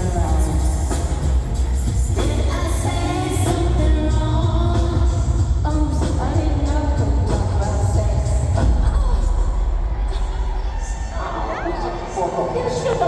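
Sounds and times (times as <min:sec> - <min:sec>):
person singing: 0:00.0 - 0:09.4
heavy steady bass: 0:00.0 - 0:09.5.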